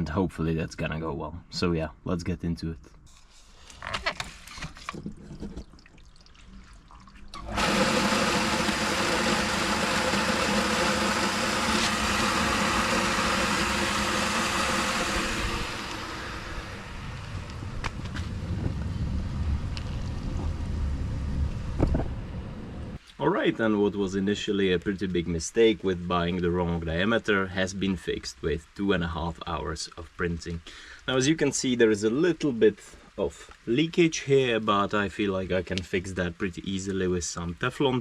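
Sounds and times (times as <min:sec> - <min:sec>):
water rushing through hose: 0:06.3 - 0:17.9
pump motor hum: 0:07.3 - 0:19.6.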